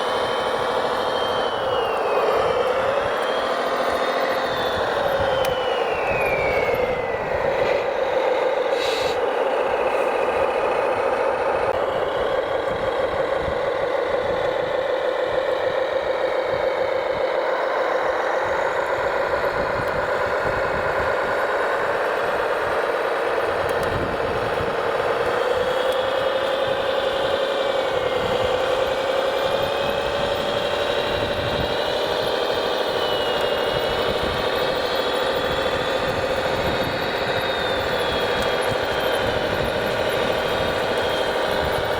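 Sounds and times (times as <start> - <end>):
high tone gliding down: 0.0 - 8.0
mechanical whine of toy machines: 0.0 - 41.9.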